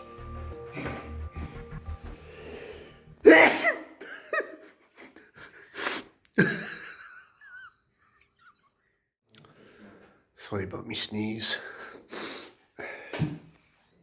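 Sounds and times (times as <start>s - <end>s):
person sneezing loudly: 3.2s - 4.0s.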